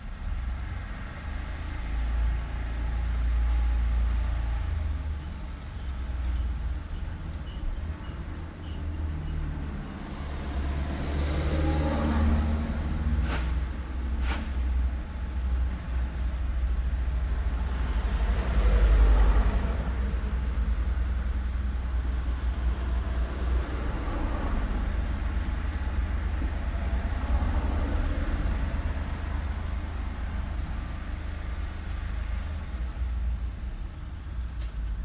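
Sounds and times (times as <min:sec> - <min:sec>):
street traffic rumble: 0:00.0 - 0:35.0
vehicle passing close: 0:09.0 - 0:14.7.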